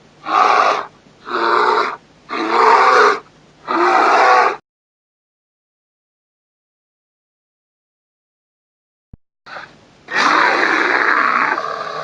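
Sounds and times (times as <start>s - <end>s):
creature bark-growls: 0.2s - 4.6s, 9.6s - 12.0s.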